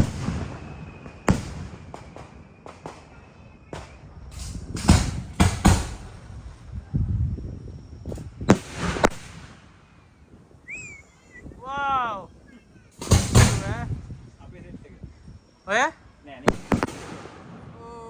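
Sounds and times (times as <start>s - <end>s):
firework shells bursting: 0.0s - 6.8s, 8.0s - 11.6s, 12.3s - 14.2s, 16.5s - 17.7s.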